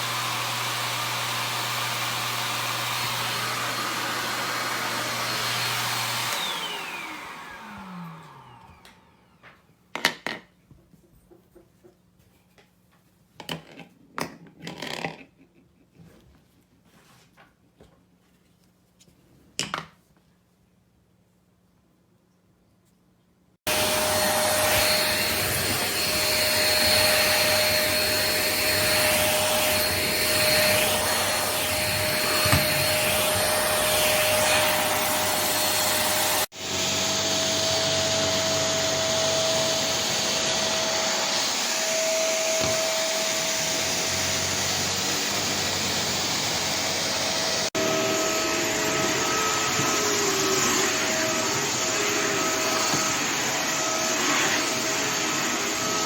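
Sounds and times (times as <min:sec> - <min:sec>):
stick vacuum whining: 0:00.0 - 0:09.6, 0:23.7 - 0:56.0.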